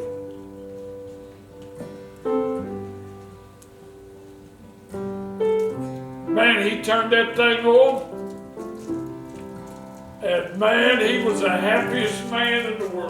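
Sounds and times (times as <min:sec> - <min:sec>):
soft keyboard chords: 0:00.0 - 0:13.0.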